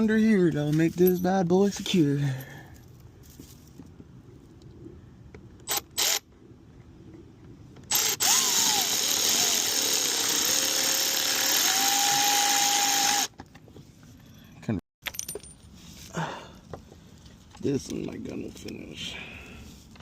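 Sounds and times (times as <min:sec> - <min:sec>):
cordless drill driving screws: 0:05.7 - 0:06.2, 0:07.9 - 0:13.3.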